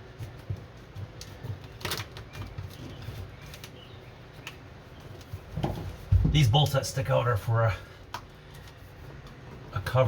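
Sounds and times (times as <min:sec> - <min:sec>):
foil sheet crinkling and rustling: 0:01.2 - 0:03.8.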